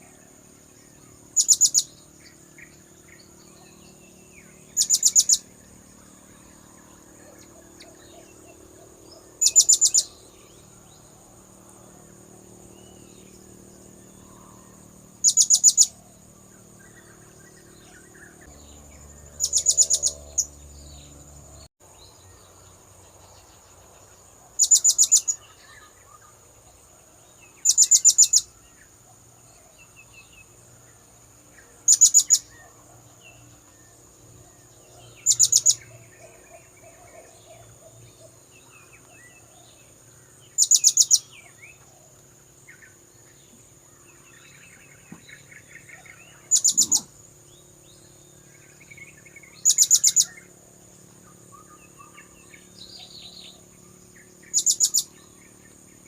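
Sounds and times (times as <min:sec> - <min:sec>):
faint bird chirps: 0:00.0 - 0:56.0
steady high-pitched whine: 0:00.0 - 0:56.0.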